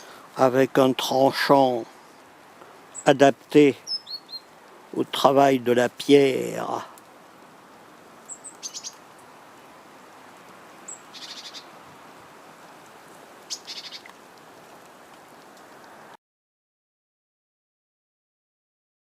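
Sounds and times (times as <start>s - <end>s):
background hiss: 0.0s - 16.2s
small birds chirping: 1.7s - 5.0s, 6.6s - 11.8s, 13.4s - 14.2s.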